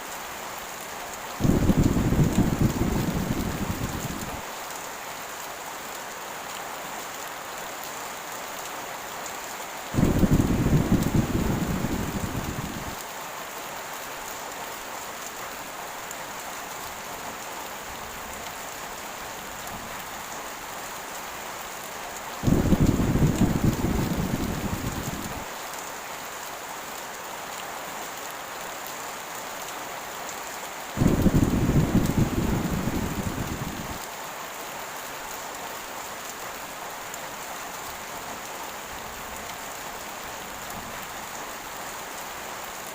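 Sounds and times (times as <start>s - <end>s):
heavy rain: 0.0s - 42.9s
thunder rumbling: 1.4s - 4.4s, 10.0s - 13.0s, 22.4s - 25.5s, 31.0s - 34.0s.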